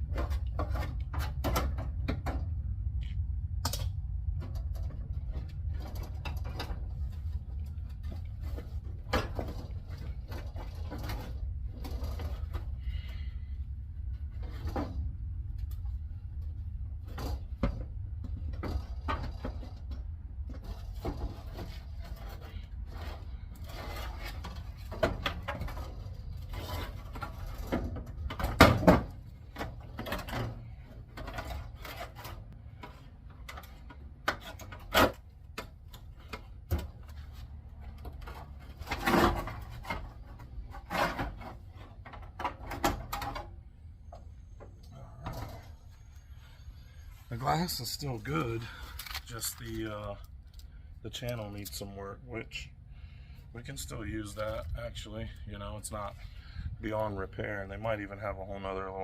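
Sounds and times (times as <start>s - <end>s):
metal clunks and knocks: 0.0s - 2.6s, 4.4s - 12.7s, 17.0s - 45.9s
steady low hum: 0.0s - 58.7s
metal scraping: 18.3s - 50.2s.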